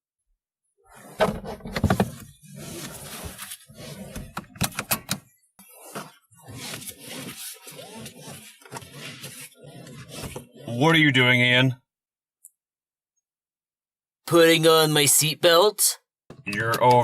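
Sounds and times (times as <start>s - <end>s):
seatbelt webbing pulled from retractor: 5.7s - 10.6s.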